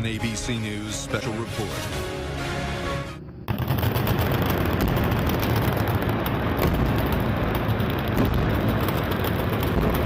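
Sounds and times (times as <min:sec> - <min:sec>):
machine-gun fire: 0:03.5 - 0:10.0.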